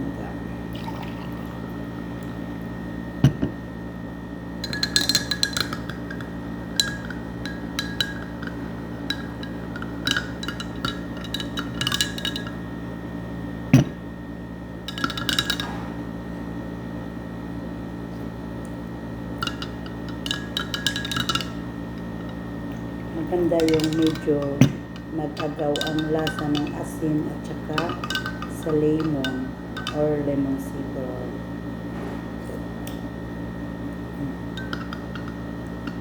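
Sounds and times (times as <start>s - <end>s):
steady low hum: 0.0s - 36.0s
spoon clinking against a glass: 4.6s - 12.6s, 14.9s - 15.8s, 19.4s - 22.4s, 23.2s - 30.4s, 34.5s - 36.0s.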